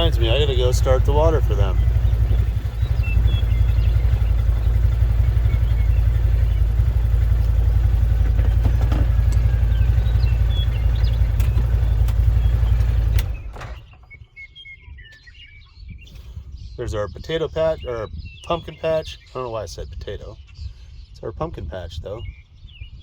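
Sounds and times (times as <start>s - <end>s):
small vehicle engine running: 0.0s - 13.9s.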